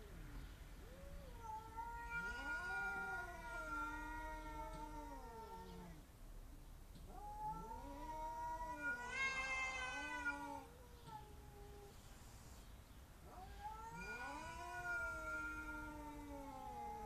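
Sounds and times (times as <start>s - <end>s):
cat yowling: 0.9s - 6.0s, 7.1s - 11.9s, 13.3s - 17.0s.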